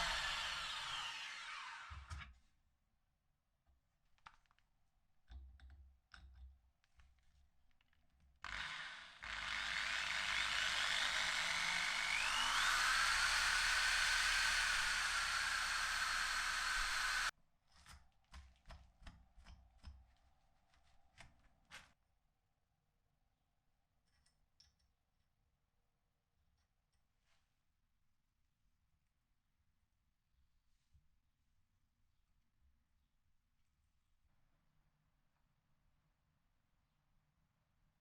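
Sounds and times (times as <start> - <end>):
power tool running: 0.0 - 2.1, 8.4 - 17.3
clicks and taps of tool handling: 4.2 - 8.2, 24.0 - 25.0.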